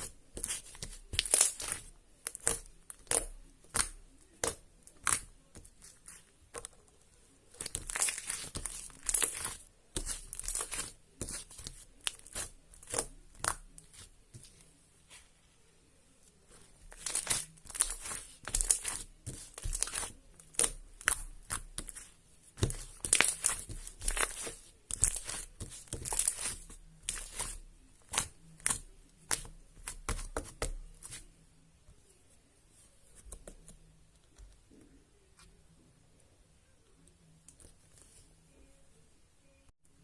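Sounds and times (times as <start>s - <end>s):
slime crackling and popping: 0.4s - 6.2s, 7.5s - 14.0s, 16.9s - 31.2s.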